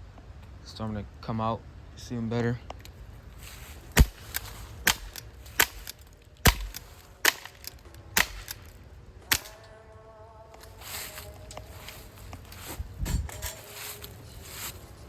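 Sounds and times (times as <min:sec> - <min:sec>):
faint steady hum: 0:00.0 - 0:15.0
sharp cracks: 0:03.8 - 0:09.8.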